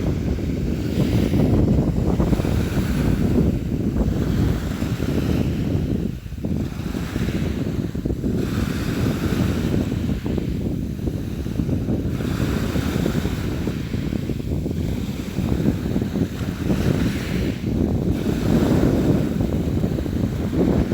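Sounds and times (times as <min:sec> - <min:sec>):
steady low rumble: 0:00.0 - 0:06.6
waves washing in: 0:00.0 - 0:20.9.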